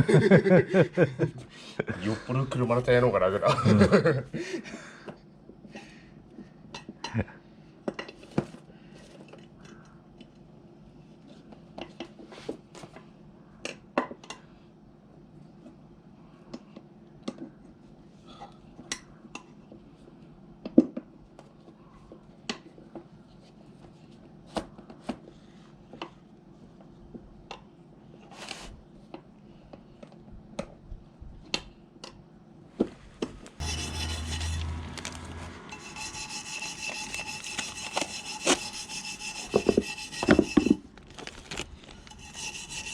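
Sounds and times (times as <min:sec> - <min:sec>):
power tool whirring and rasping: 0:33.6 - 0:40.7
hand tools clicking and knocking: 0:33.6 - 0:40.8.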